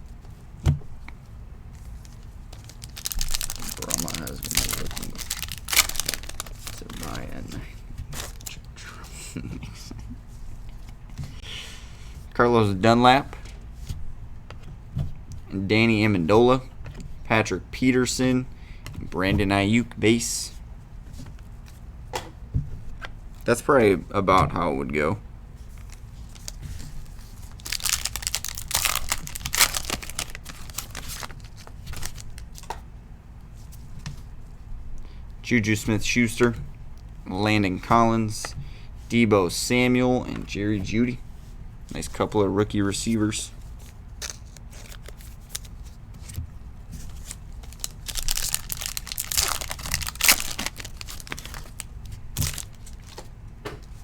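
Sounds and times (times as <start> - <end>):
plastic wrapper tearing and crinkling: 2.5 - 7.4, 8.2 - 8.6, 25.8 - 32.7, 44.2 - 45.8, 47.1 - 53.3.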